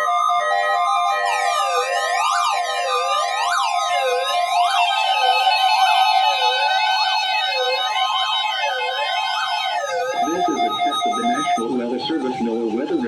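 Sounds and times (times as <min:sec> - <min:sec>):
wailing siren: 0:00.0 - 0:13.0
steady alarm tone: 0:00.8 - 0:13.0
stepped electronic notes: 0:10.0 - 0:13.0.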